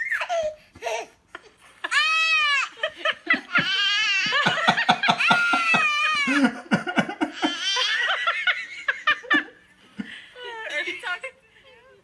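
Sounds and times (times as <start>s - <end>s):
high-pitched laughter and giggling: 1.4s - 9.7s.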